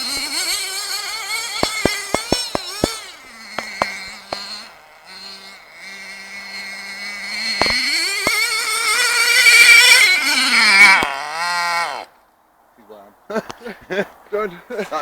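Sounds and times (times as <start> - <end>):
small nitro engine revving: 0.0 - 12.2
sharp clicks: 1.4 - 4.6, 7.6 - 8.4.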